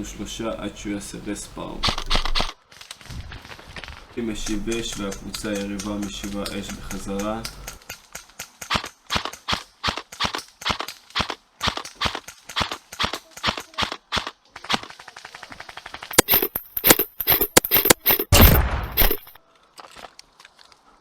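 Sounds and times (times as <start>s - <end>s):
airsoft guns firing: 4.2s - 19.4s.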